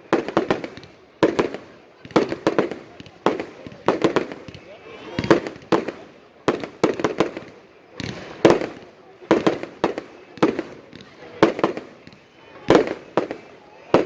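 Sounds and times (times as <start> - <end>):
fireworks bursting with echo: 0.0 - 14.0.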